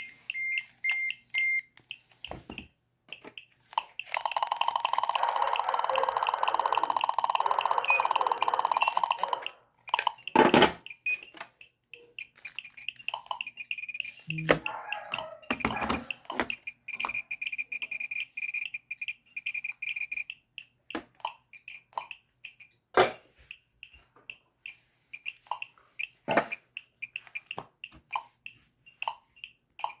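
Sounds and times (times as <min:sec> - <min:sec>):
geiger counter beeps: 0:00.0 - 0:01.7, 0:03.8 - 0:11.4, 0:12.0 - 0:20.4
geiger counter clicks: 0:00.0 - 0:30.0.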